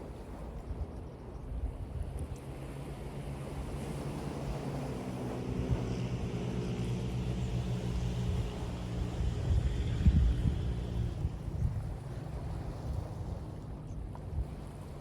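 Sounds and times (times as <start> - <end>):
waves on beach: 2.6 - 15.0
wind buffeting microphone: 8.2 - 13.6.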